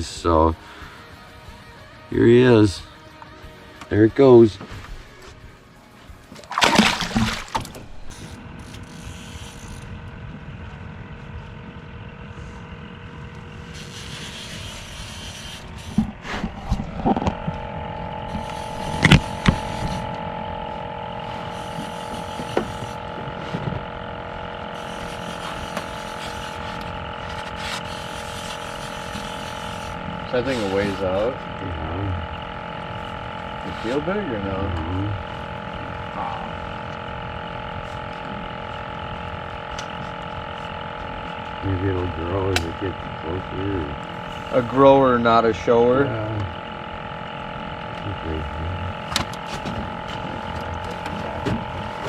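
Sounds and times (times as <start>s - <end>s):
motorboat engine droning: 0.0s - 52.0s
water splash: 6.4s - 8.1s.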